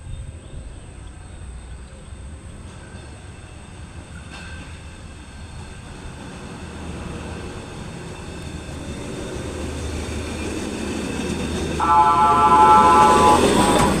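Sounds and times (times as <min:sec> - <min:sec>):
rail vehicle rumbling on track: 0:00.0 - 0:14.0
vehicle horn chord: 0:11.8 - 0:14.0.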